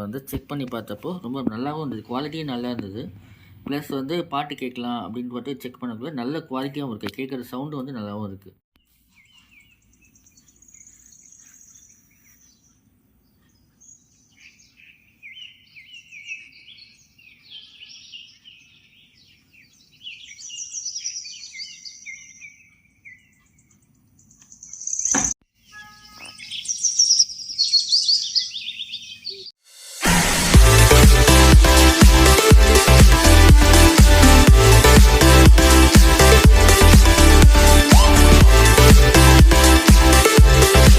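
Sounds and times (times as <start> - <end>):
small birds chirping: 8.8 - 29.5.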